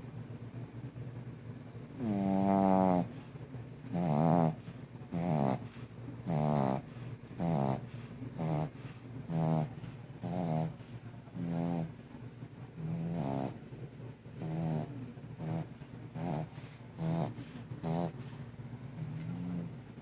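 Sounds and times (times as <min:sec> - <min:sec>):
puppy snoring: 0:01.9 - 0:03.3, 0:03.9 - 0:12.1, 0:12.8 - 0:13.7, 0:14.3 - 0:18.4, 0:19.0 - 0:19.8.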